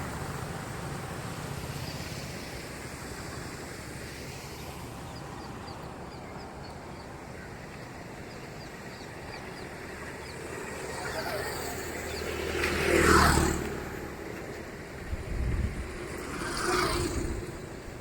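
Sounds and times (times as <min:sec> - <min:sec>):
outdoor rushing noise: 0:00.0 - 0:18.0.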